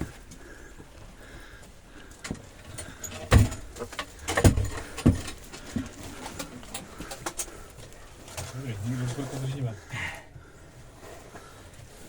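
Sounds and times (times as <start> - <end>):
heavy thumps and knocks: 2.3 - 6.0.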